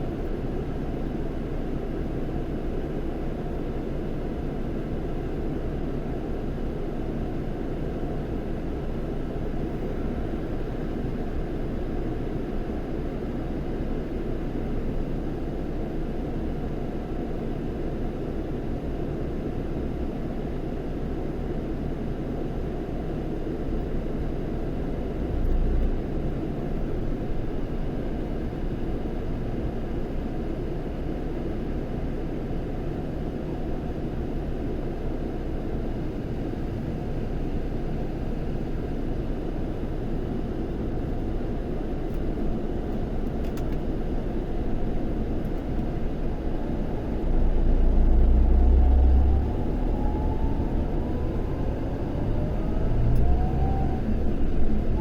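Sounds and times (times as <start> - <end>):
diesel coach engine rumbling: 41.8 - 55.0.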